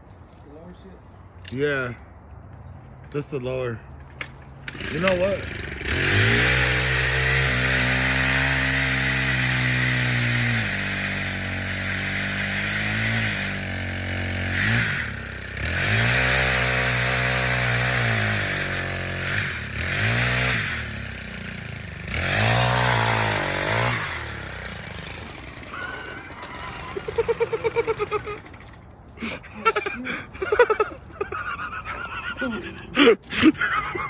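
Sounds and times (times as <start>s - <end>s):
chainsaw revving: 4.6s - 30.9s.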